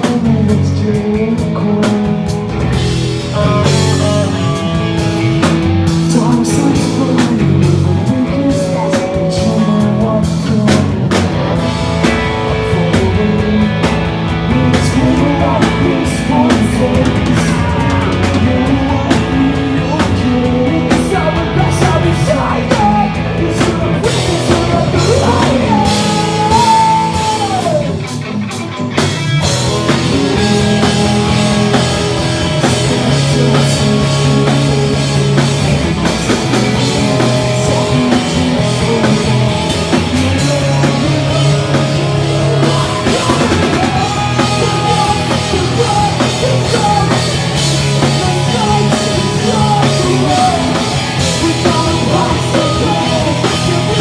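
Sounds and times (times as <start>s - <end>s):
drum kit: 0.0s - 54.0s
electric guitars: 0.0s - 54.0s
person singing: 0.0s - 54.0s.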